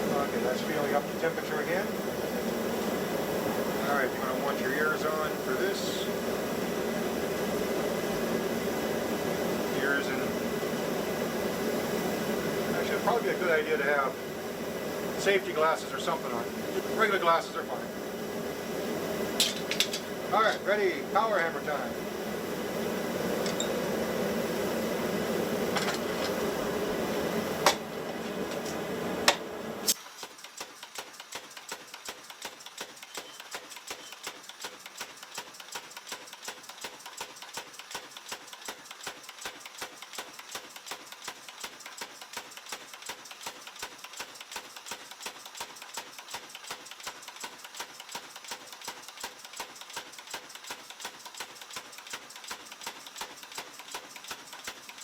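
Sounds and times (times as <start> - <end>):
power hammer fast strikes: 29.3 - 55.0.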